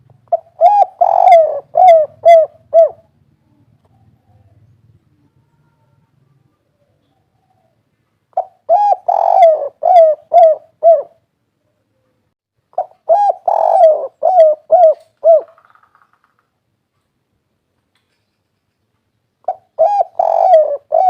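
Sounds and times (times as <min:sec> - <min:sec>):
dove cooing: 0:00.3 - 0:06.0, 0:06.6 - 0:11.3, 0:12.8 - 0:15.7, 0:19.4 - 0:21.0.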